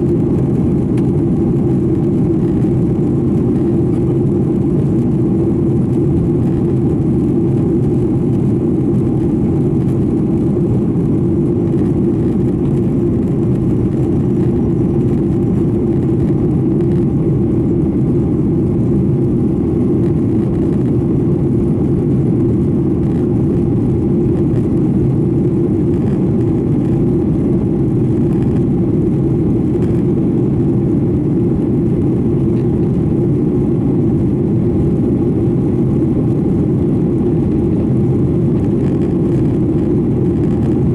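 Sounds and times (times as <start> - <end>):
jet cabin drone: 0.0 - 40.9.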